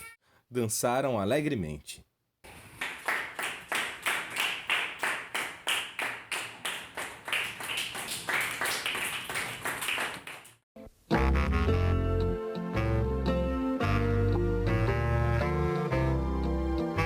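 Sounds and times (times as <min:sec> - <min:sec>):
children clapping in rhythm: 0:02.5 - 0:10.6.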